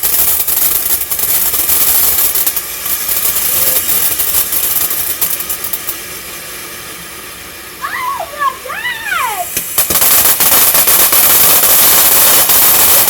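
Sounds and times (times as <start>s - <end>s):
firework hissing and crackling: 0.0s - 13.0s.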